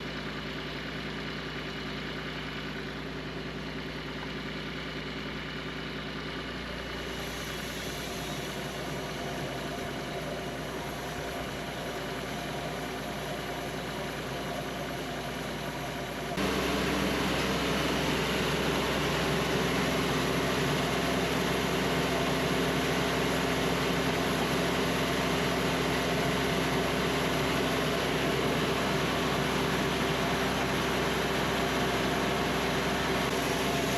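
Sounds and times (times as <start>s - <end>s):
sawmill engine running: 0.0s - 33.9s.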